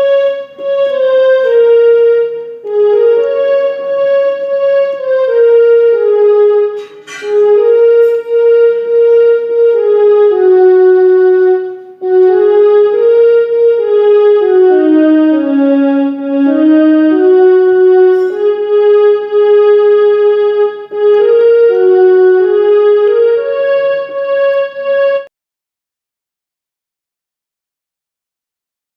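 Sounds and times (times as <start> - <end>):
electronic keyboard melody: 0.0 - 25.3.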